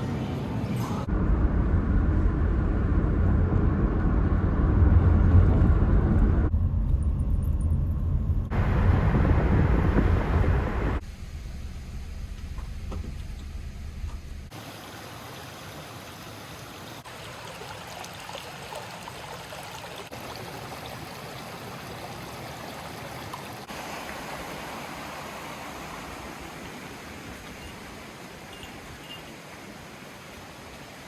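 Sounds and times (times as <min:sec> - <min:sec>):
flowing water rushing: 0:14.5 - 0:31.0.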